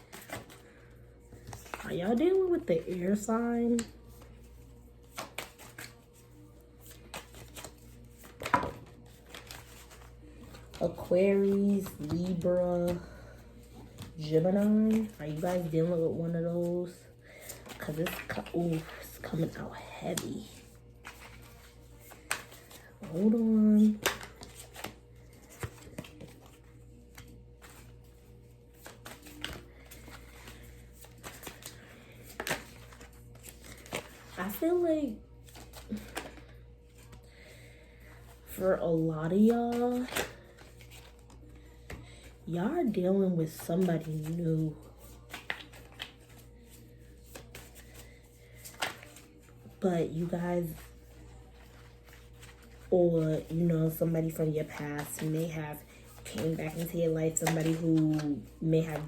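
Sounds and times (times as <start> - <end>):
low steady hum: 0.0 - 59.0
cards clicking and tapping: 6.8 - 13.0, 17.4 - 27.9, 28.8 - 34.4, 56.1 - 59.0.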